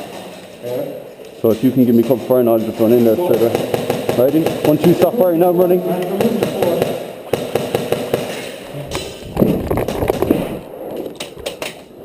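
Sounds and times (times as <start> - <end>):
airsoft guns firing: 3.2 - 5.1, 6.0 - 9.2.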